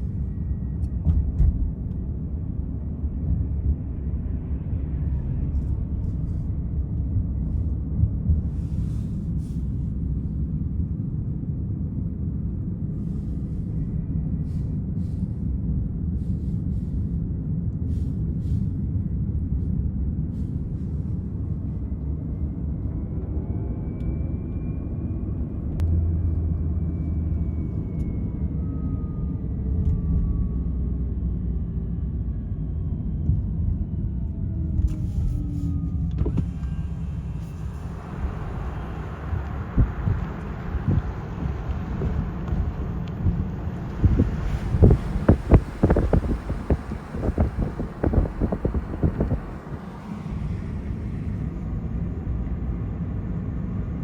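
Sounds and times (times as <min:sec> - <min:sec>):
faint whining tones: 0:00.0 - 0:11.4, 0:20.2 - 0:54.0
road and tyre rumble: 0:00.0 - 0:54.0.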